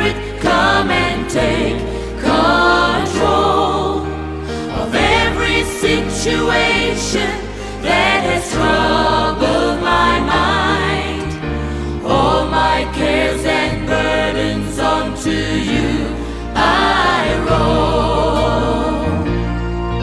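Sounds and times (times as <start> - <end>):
person singing gospel song: 0.0 - 11.4
bass line: 0.0 - 20.0
keyboard playing: 0.0 - 20.0.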